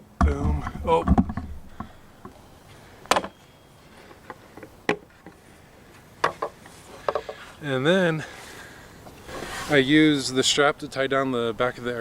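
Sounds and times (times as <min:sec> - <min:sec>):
wooden stand knocks and clicks: 0:00.2 - 0:01.9.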